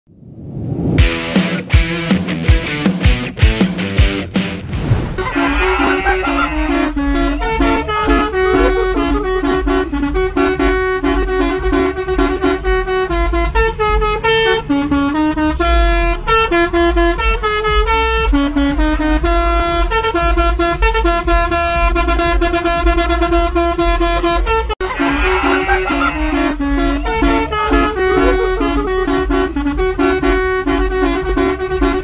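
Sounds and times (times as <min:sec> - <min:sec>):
bus rumble: 0:00.1 - 0:32.0
musical air horn melody: 0:05.2 - 0:32.0.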